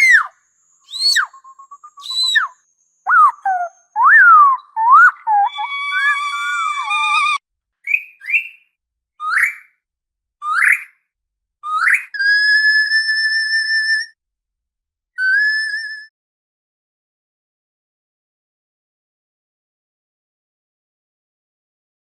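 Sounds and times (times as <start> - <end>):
orca whistles and calls: 0.0 - 0.3, 0.9 - 8.6.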